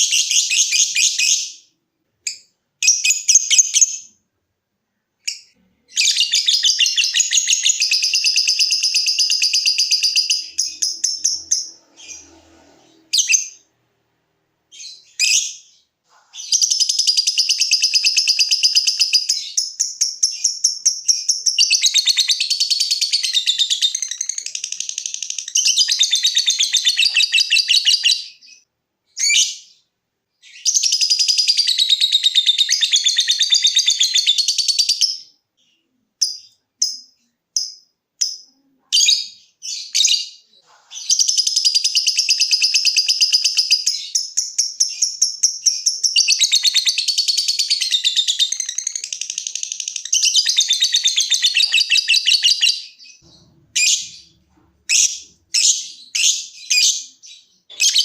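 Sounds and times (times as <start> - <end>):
lovebird chattering trill: 5.3 - 12.3.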